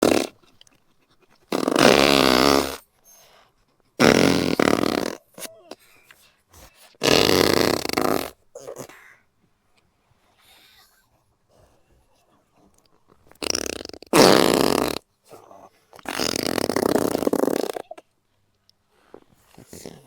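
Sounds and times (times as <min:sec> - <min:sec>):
long loud farts: 0:00.0 - 0:00.4, 0:01.5 - 0:02.8, 0:04.0 - 0:05.2, 0:07.0 - 0:08.4, 0:13.4 - 0:15.0, 0:16.1 - 0:17.9
short sputtering farts: 0:00.0 - 0:00.4, 0:01.5 - 0:02.8, 0:04.0 - 0:05.3, 0:07.0 - 0:08.4, 0:13.3 - 0:15.0, 0:16.0 - 0:18.0.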